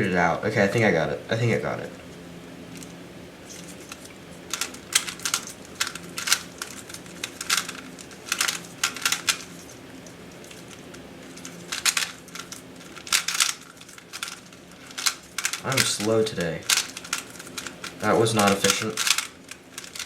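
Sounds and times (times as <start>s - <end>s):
puzzle cube clicking: 3.5s - 9.8s, 10.4s - 16.0s, 16.6s - 20.0s.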